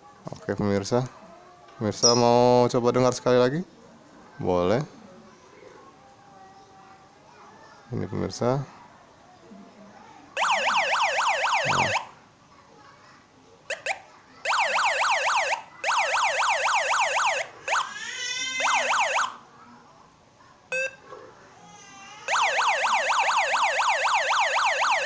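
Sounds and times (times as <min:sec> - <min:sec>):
electronic siren warbling: 0:10.4 - 0:12.1.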